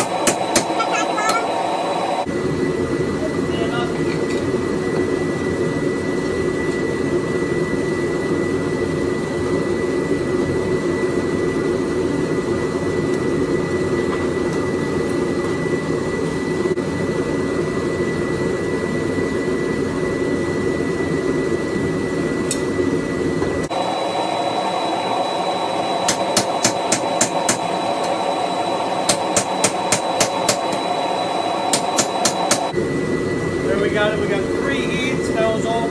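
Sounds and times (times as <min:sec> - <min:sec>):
forge roaring: 0:00.0 - 0:03.5, 0:21.6 - 0:35.9
high steady whine: 0:00.0 - 0:35.9.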